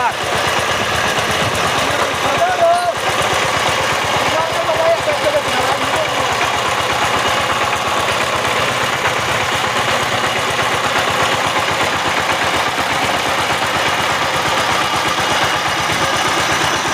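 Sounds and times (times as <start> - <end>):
diesel engine pulsing: 0.0 - 16.9.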